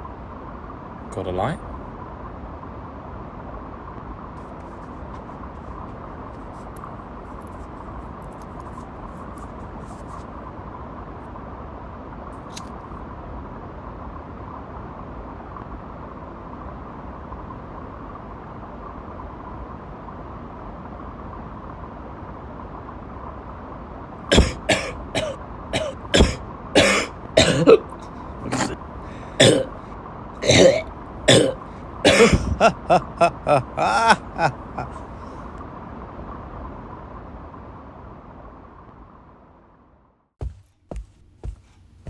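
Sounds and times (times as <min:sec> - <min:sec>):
person coughing: 0:24.3 - 0:29.8, 0:30.4 - 0:35.0.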